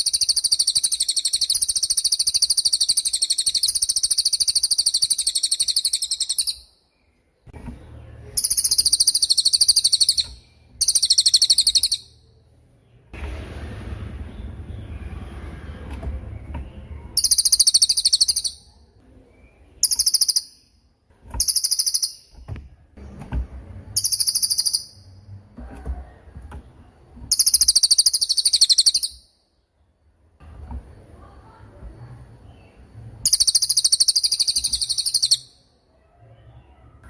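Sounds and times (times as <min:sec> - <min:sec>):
songbird high-pitched trills: 0:00.0 - 0:06.8, 0:08.4 - 0:12.2, 0:17.2 - 0:18.8, 0:19.4 - 0:20.8, 0:21.4 - 0:22.4, 0:24.0 - 0:25.2, 0:27.3 - 0:29.4, 0:33.2 - 0:35.7.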